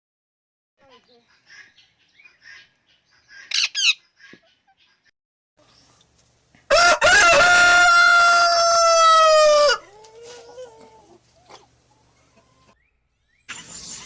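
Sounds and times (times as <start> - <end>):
rooster crowing: 6.7 - 11.1.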